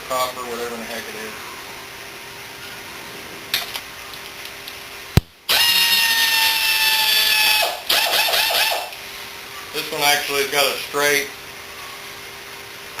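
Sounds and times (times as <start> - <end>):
power drill motor whine: 5.5 - 9.0.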